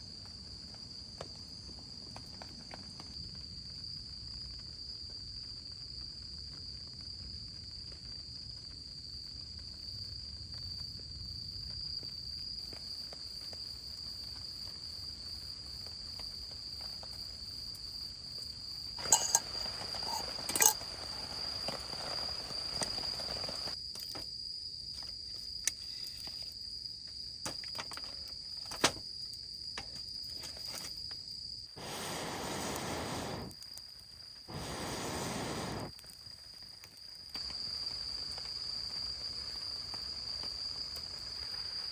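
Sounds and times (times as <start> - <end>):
broad rushing noise: 31.8 - 33.5, 34.5 - 35.9.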